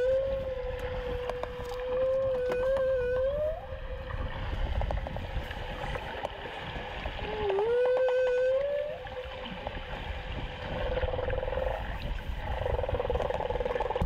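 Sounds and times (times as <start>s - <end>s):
whale moaning song: 0.0s - 4.1s, 7.2s - 9.4s.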